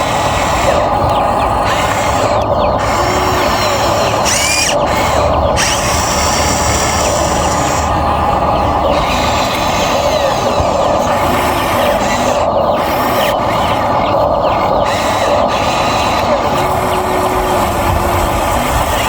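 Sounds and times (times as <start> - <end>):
electric motors whirring: 0.0 - 19.0
high motor whines: 0.0 - 19.0.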